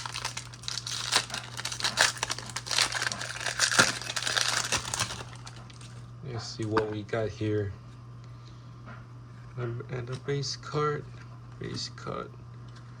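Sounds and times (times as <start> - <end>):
foil wrapper crinkling: 0.0 - 6.0.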